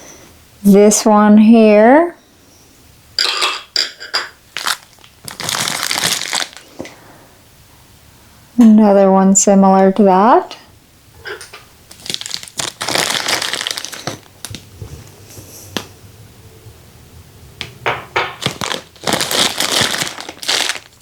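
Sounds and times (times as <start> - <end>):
packaging crinkling: 4.5 - 6.9, 11.9 - 14.7, 18.4 - 21.0.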